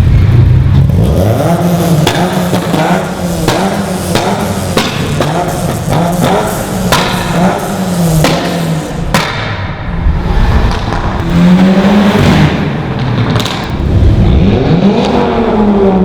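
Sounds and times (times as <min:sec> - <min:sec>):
car engine revving: 0:00.0 - 0:16.0
exhaust pops and crackles: 0:01.8 - 0:09.6, 0:12.9 - 0:14.2.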